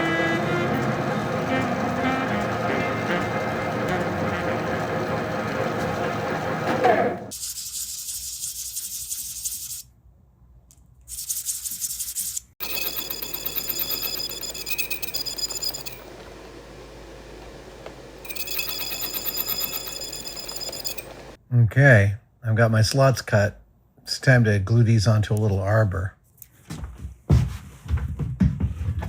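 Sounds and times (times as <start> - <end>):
machine tool cutting metal: 0.0 - 7.3, 12.6 - 21.4.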